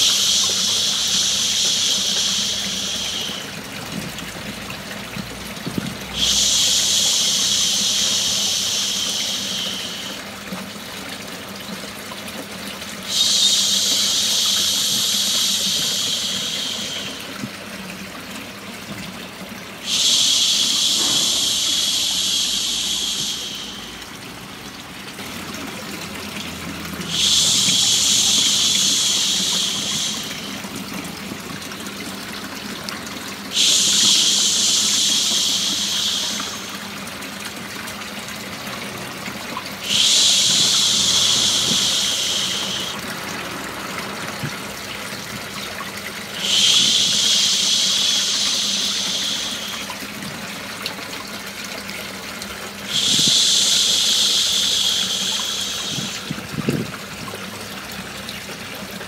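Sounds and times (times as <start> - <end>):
running water: 0.0 - 59.0
person shushing: 13.1 - 17.2, 19.8 - 24.1, 27.0 - 30.6, 52.9 - 56.4.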